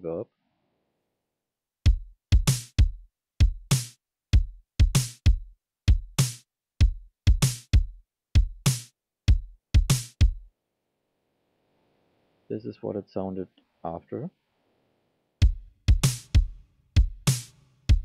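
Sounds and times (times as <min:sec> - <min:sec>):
drum machine snare hits: 0:01.9 - 0:10.4, 0:15.4 - 0:18.0
drum machine kicks: 0:01.9 - 0:10.5, 0:15.4 - 0:18.0.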